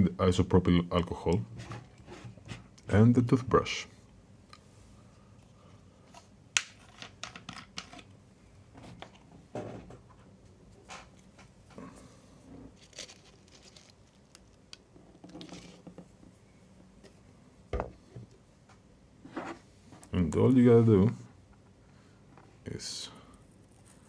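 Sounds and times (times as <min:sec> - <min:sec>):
small objects clicking and scraping: 0:12.7 - 0:16.0.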